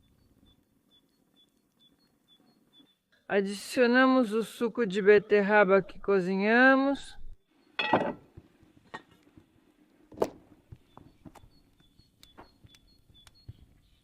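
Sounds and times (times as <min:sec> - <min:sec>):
faint high chirps: 0:00.0 - 0:03.3, 0:10.7 - 0:14.0.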